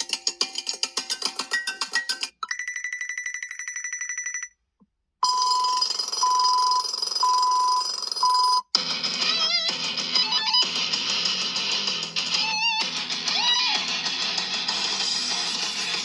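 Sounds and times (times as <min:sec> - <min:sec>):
beeping ringtone: 0:01.6 - 0:04.6, 0:05.2 - 0:08.7
wavering ringtone: 0:01.7 - 0:04.6, 0:05.2 - 0:08.7
fast trilling phone ring: 0:05.2 - 0:09.6.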